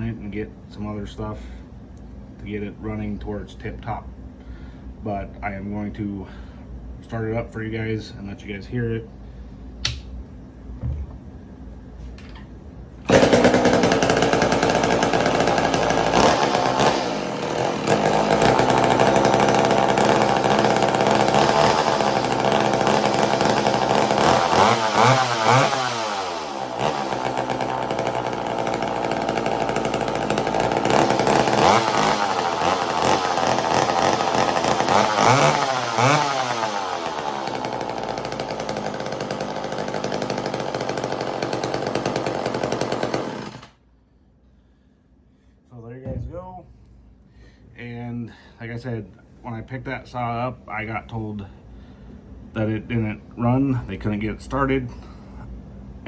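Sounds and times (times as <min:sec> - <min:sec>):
chainsaw revving: 0:13.0 - 0:43.8.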